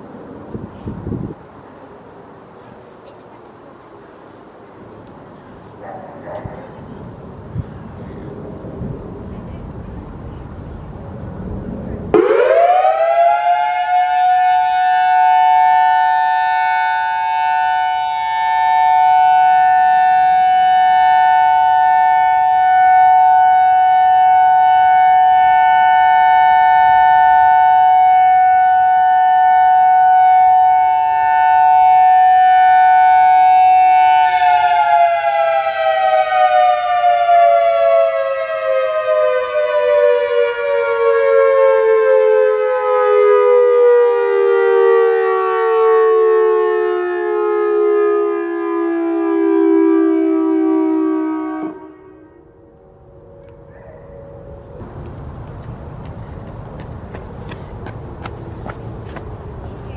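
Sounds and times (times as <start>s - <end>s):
dual-tone warning siren: 0.0s - 1.6s, 10.0s - 55.4s.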